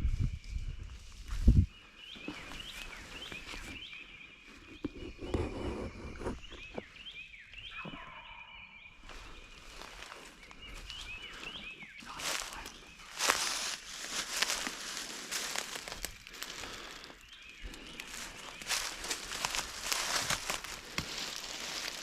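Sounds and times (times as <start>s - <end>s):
small birds chirping: 0.0s - 22.0s
leaves rustling: 9.1s - 22.0s.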